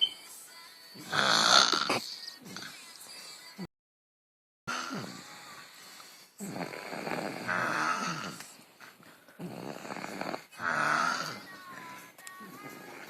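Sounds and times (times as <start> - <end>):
person snoring: 1.0 - 2.8, 4.7 - 8.6, 9.4 - 13.0.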